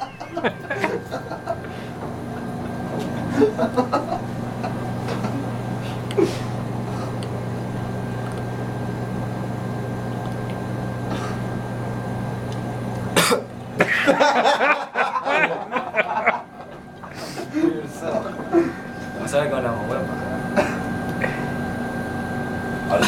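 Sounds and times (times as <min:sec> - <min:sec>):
steady low hum: 0:00.0 - 0:23.0
man coughing and gargling: 0:11.1 - 0:11.4, 0:13.2 - 0:14.1, 0:20.5 - 0:21.5.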